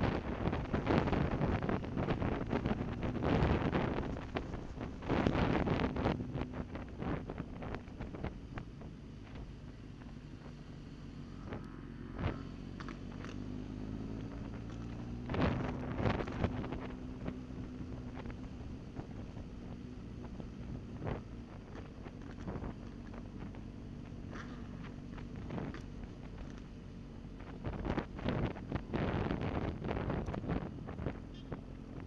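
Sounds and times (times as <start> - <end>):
wind buffeting microphone: 0.0 - 8.7, 27.5 - 31.3
motorcycle engine running: 0.0 - 32.0.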